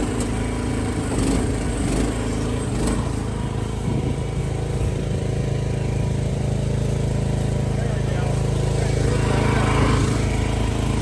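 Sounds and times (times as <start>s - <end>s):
small excavator engine running: 0.0s - 11.0s.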